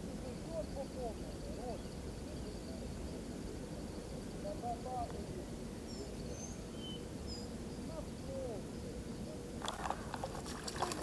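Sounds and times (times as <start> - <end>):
outdoor background noise: 0.0 - 11.0
bird chirps: 5.9 - 7.8
water splashing: 9.6 - 11.0.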